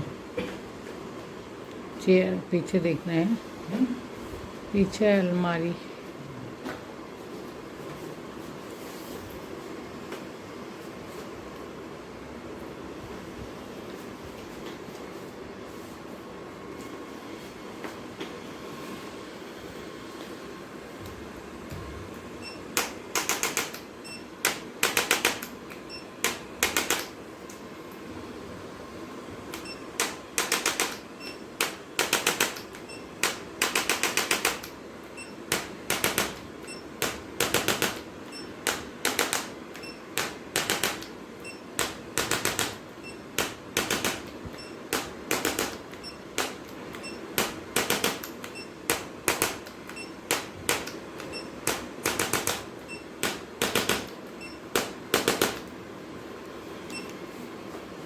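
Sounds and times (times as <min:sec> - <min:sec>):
rapid mechanical clicking: 0:22.8 - 0:23.8, 0:24.4 - 0:27.1, 0:29.5 - 0:31.0, 0:31.6 - 0:34.8, 0:35.5 - 0:41.2, 0:41.8 - 0:55.7.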